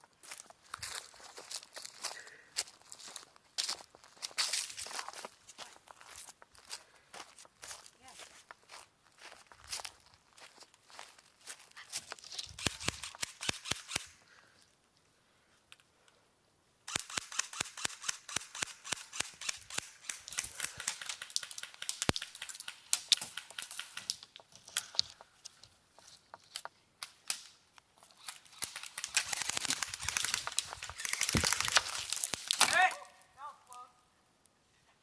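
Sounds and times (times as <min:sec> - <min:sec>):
airsoft guns firing: 0:28.6 - 0:32.8.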